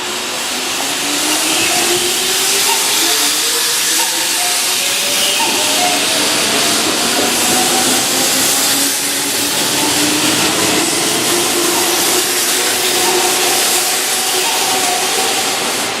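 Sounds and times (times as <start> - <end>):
train wheels rushing on rail: 0.0 - 16.0.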